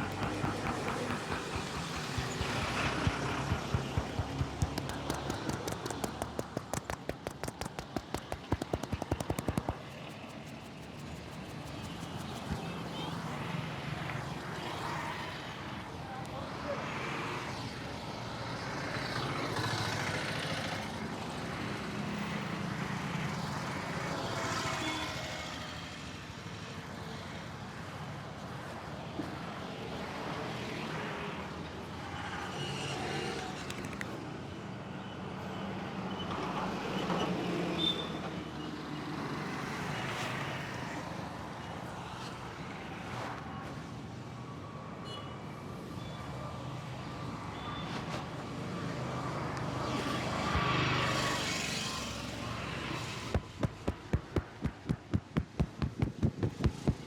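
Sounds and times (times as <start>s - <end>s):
street traffic passing: 0.0s - 24.5s, 29.3s - 57.0s.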